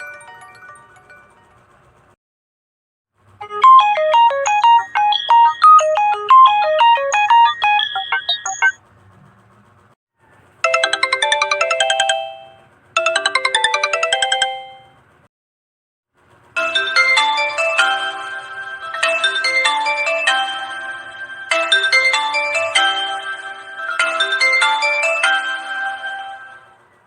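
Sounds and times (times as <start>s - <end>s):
smartphone ringtone tune: 0.0s - 1.7s, 3.4s - 8.8s, 10.6s - 15.0s, 16.6s - 26.8s
rippling ringtone notes: 0.0s - 1.9s, 3.4s - 8.8s, 10.6s - 15.0s, 16.6s - 26.9s.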